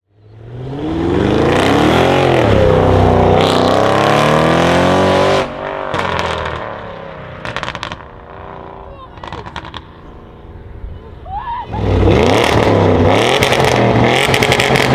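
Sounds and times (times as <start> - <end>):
car engine at full throttle: 0.1 - 14.9
exhaust crackling and popping: 2.2 - 10.6, 11.3 - 14.9.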